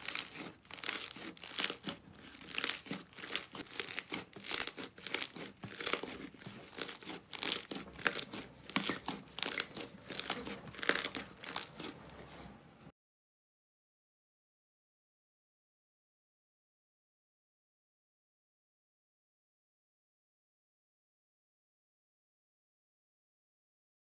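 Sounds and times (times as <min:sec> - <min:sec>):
slime crackling and popping: 0:00.0 - 0:12.0.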